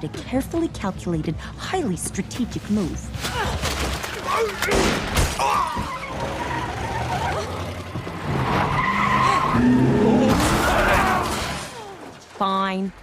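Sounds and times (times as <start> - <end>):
car tyres squealing: 5.6 - 11.4.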